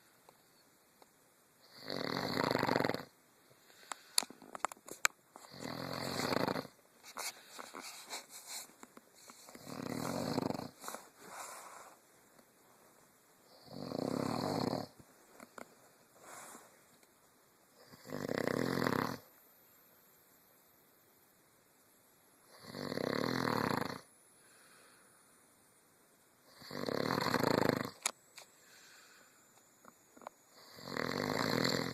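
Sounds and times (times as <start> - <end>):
quiet breaths: 0.0 - 31.9
loud snoring: 1.6 - 3.2, 5.4 - 6.8, 9.4 - 11.0, 13.5 - 15.0, 17.8 - 19.3, 22.5 - 24.1, 26.4 - 28.0, 30.5 - 31.9.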